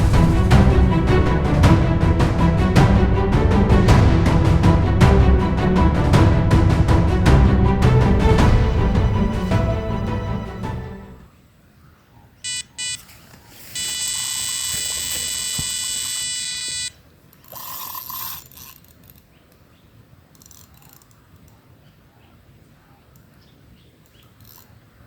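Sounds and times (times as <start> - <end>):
electronic bite alarm bleeps: 12.4 - 13.0, 13.7 - 16.9.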